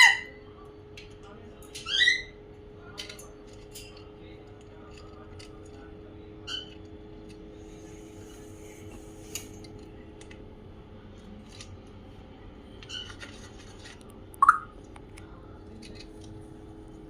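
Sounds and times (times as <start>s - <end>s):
parrot squawk: 0.0s - 0.4s, 1.8s - 2.4s
steady low hum: 2.3s - 17.0s.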